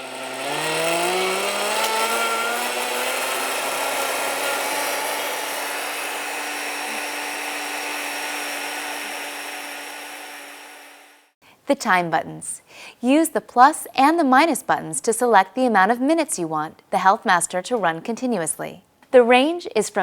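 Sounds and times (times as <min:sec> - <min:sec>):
blender motor whining: 0:00.0 - 0:11.3.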